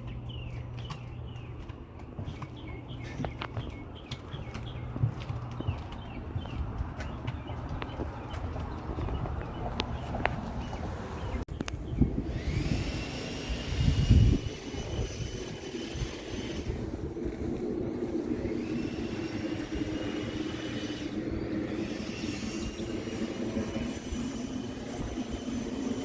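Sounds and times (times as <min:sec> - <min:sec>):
machine droning: 0:10.9 - 0:26.0.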